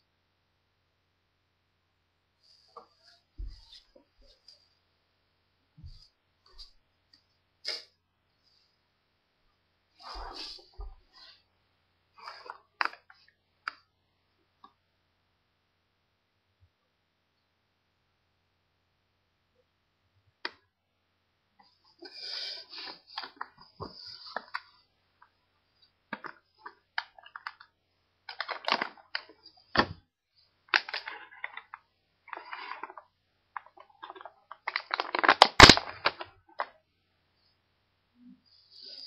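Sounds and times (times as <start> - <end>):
packaging crinkling and snapping: 27.0 - 27.7, 28.3 - 29.9, 30.7 - 33.0, 33.6 - 36.7.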